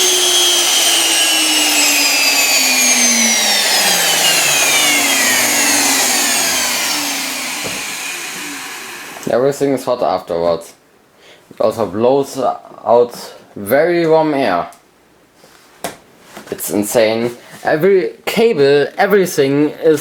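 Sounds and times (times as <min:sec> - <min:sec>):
vacuum motors whining down: 0:00.0 - 0:09.3.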